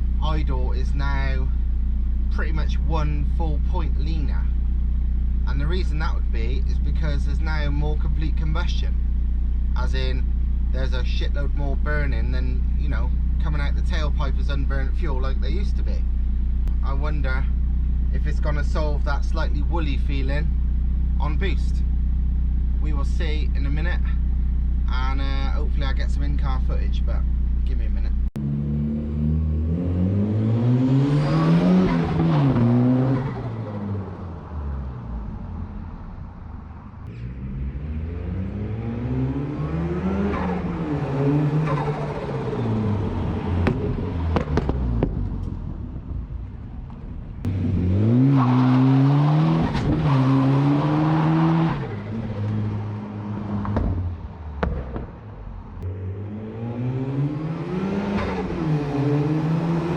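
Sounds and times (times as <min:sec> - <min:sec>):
turbocharged engine revving: 0:00.0 - 0:46.6, 0:47.4 - 0:59.9
sharp exhaust cracks: 0:40.3 - 0:47.8.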